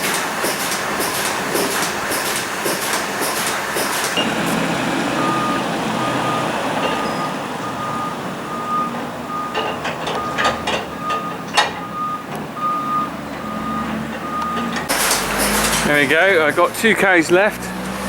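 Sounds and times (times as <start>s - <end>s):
vehicle engine running: 0.0s - 18.0s
reversing alarm beeping: 4.2s - 16.6s
sharp metal clanks: 13.3s - 16.5s.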